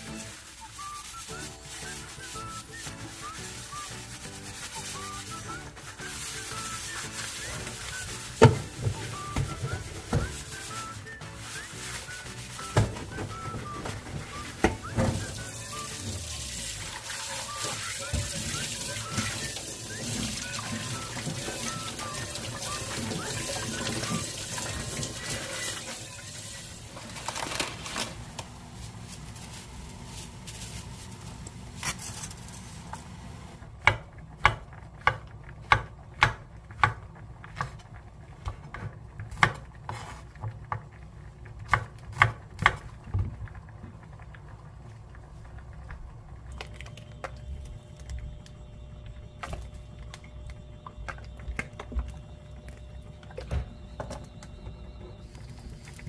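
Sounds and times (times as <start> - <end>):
tap water running into sink: 14.6 - 27.5.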